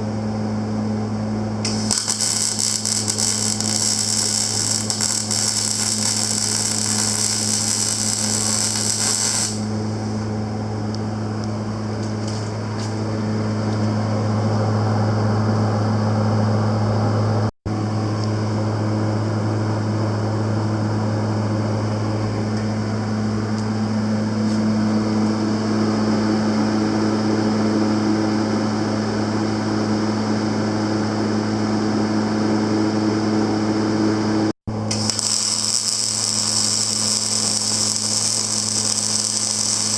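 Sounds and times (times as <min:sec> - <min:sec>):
welder electrical hum: 0:00.0 - 0:39.9
crackling welding arc: 0:01.6 - 0:09.8, 0:34.8 - 0:39.9.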